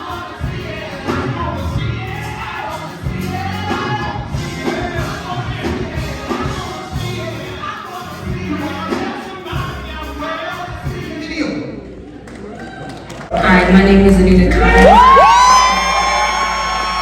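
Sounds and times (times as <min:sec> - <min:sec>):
band with strong bass line: 0:00.0 - 0:11.2
voices singing gospel: 0:00.0 - 0:12.2.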